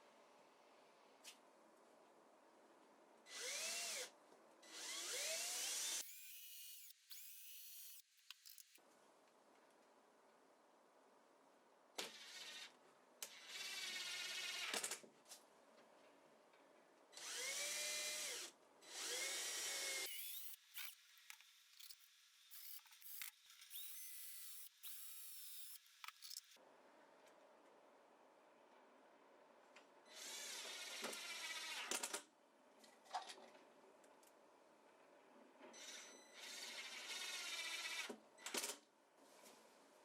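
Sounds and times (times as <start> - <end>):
power drill whining: 17.2 - 21.0, 21.8 - 26.4.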